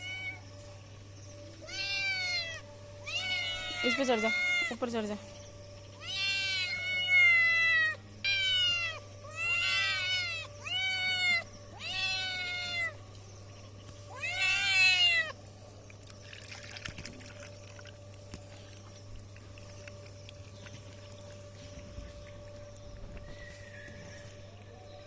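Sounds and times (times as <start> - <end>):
cat meowing: 1.6 - 4.7, 6.0 - 13.0, 14.1 - 15.4.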